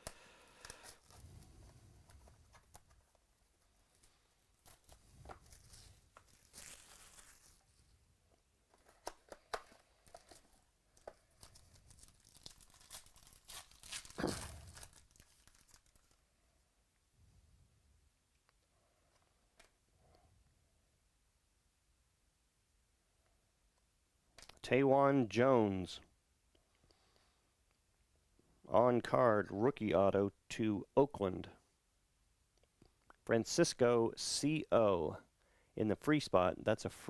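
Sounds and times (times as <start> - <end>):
plastic wrapping tearing and crinkling: 3.9 - 7.6, 9.0 - 16.2.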